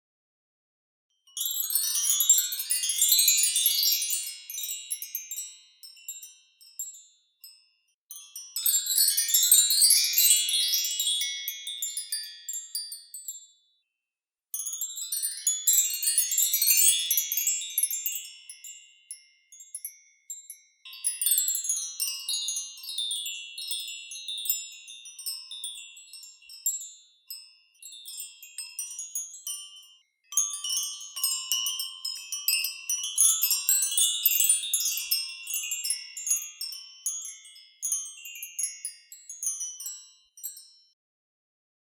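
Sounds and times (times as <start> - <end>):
metal wind chimes jingling: 1.3 - 7.1, 8.3 - 12.7, 27.8 - 40.8.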